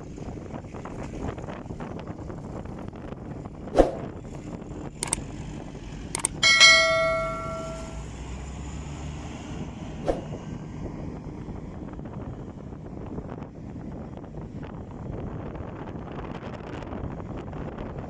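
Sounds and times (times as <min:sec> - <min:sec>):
ringing metal clang: 0:06.3 - 0:08.0
sharp knocks: 0:06.4 - 0:08.0.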